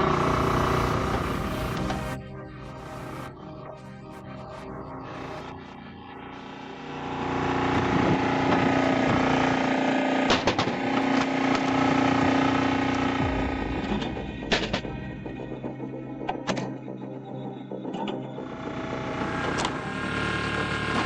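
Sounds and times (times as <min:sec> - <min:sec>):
machine engine humming: 0:00.0 - 0:16.4.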